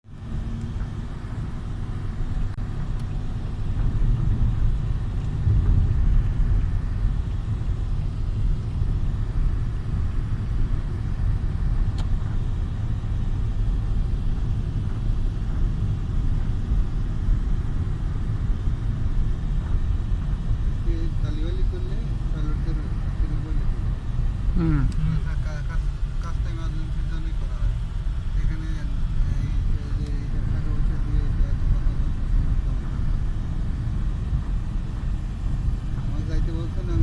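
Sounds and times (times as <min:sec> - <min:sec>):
noise: 0:00.0 - 0:37.0
steady low rumble: 0:00.0 - 0:37.0.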